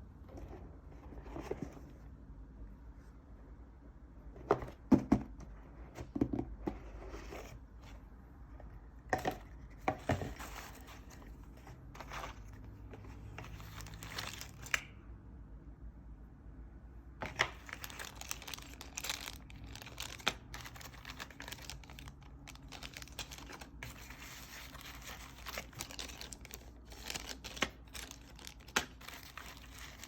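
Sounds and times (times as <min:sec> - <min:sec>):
packaging crinkling and rustling: 0:10.0 - 0:14.8, 0:17.2 - 0:30.0.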